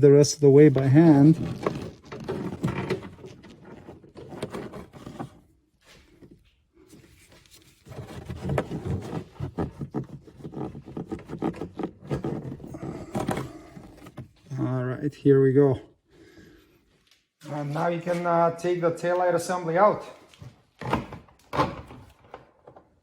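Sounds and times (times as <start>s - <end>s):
scraping and rubbing by hand: 0.1s - 14.8s, 17.4s - 20.2s.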